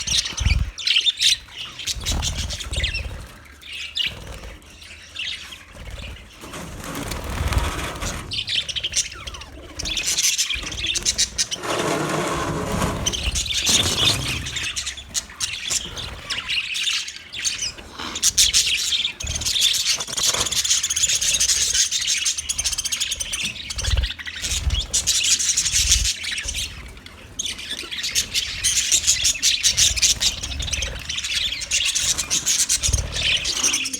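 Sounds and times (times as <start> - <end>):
budgerigars chirping and warbling: 0.0 - 33.9.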